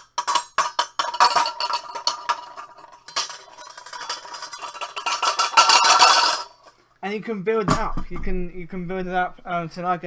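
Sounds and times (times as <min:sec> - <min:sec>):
metal spoon clattering in saucepan: 0:00.0 - 0:06.7.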